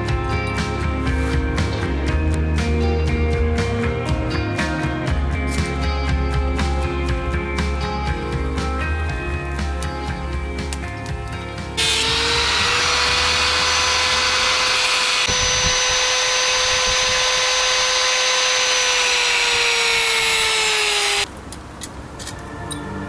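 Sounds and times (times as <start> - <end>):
power tool motor whining: 9.5 - 21.3.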